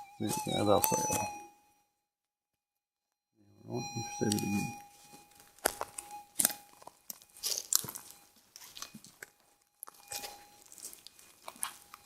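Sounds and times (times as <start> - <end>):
metal detector threshold hum: 3.5 - 12.0
crunching and clicking noises: 5.4 - 12.0.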